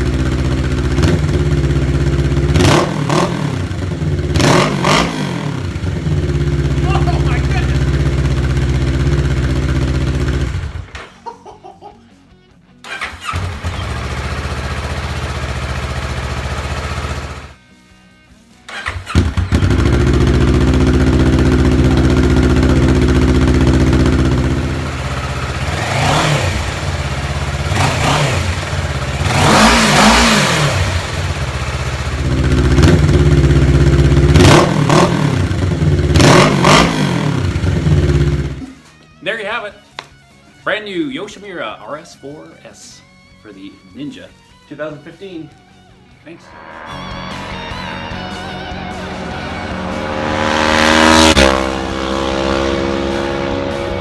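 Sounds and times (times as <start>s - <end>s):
motorcycle engine idling: 0.0s - 10.9s, 13.3s - 17.6s, 19.2s - 38.7s
motorcycle engine revving: 0.0s - 11.0s, 12.9s - 17.6s, 18.7s - 38.8s, 46.4s - 54.0s.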